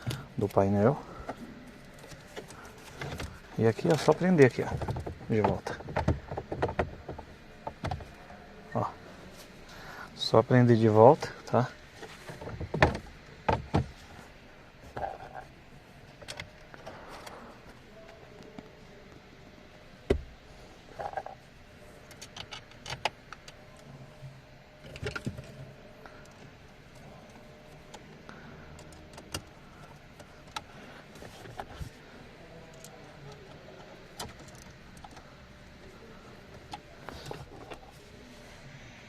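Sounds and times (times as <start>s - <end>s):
plastic trim clicks and knocks: 4.6s - 8.1s.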